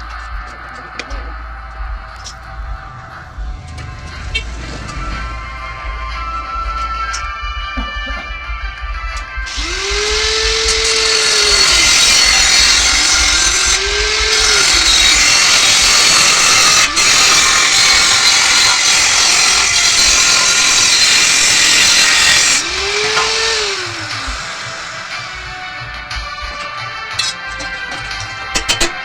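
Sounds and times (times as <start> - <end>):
power tool hissing cutting noise: 9.5 - 28.4.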